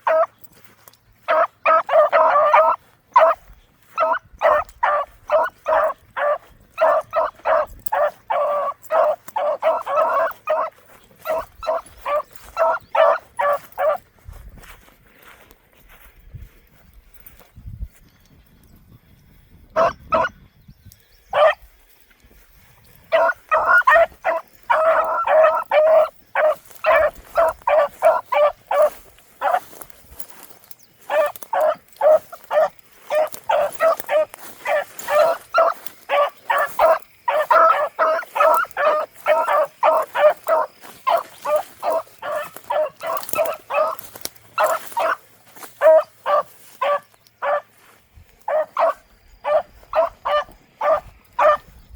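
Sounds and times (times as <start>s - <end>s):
puppies barking: 0.0s - 14.4s, 19.7s - 20.4s, 21.3s - 21.6s, 22.9s - 51.8s.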